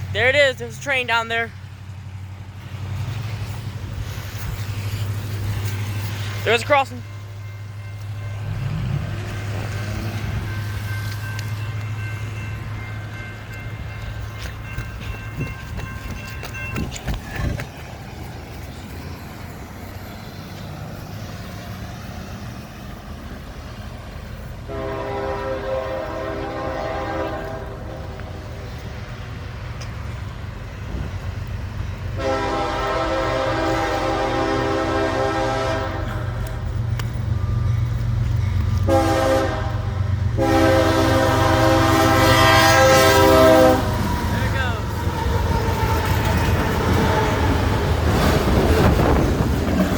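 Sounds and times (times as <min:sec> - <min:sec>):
train rumble: 0:00.0 - 0:49.9
locomotive air horn: 0:24.7 - 0:28.3, 0:32.2 - 0:36.5, 0:38.8 - 0:44.0.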